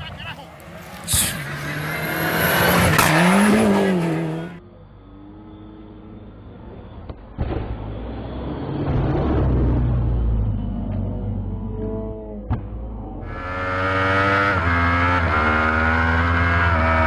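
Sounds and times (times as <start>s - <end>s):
racing engine passing: 0.6s - 6.9s.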